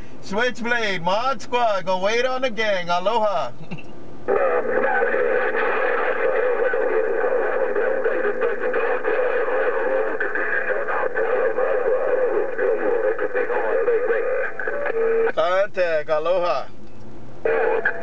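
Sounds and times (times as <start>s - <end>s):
garbled warbling radio signal: 4.3s - 15.3s, 17.5s - 18.0s
radio static: 4.3s - 16.6s, 17.4s - 18.0s.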